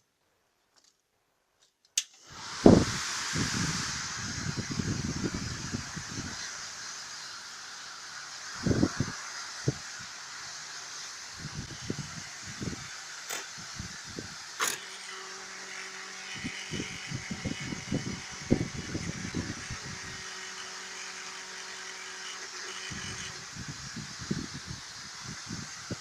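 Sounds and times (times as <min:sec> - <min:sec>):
blower fan humming: 0:02.2 - 0:26.0
crackling buzz: 0:02.4 - 0:24.6.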